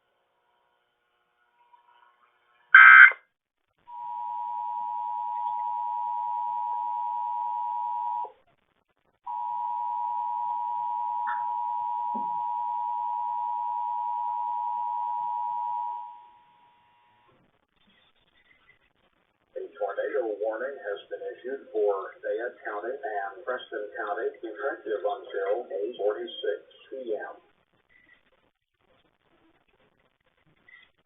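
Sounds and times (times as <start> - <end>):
digital data burst: 2.8 - 3.2
piercing two-tone alert signal: 2.8 - 3.2, 9.3 - 16.0.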